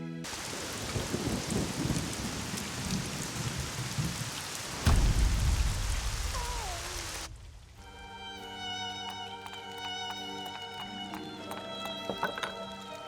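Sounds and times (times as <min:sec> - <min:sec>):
heavy rain: 0:00.3 - 0:13.0
thunderclap rolling into rumble: 0:00.4 - 0:08.2.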